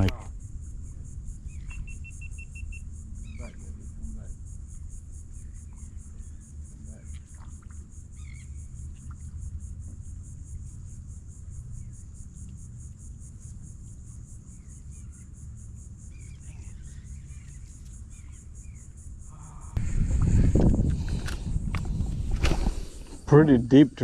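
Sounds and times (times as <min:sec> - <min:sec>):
insects trilling: 0:00.0 - 0:24.0
low rumble: 0:19.2 - 0:24.0.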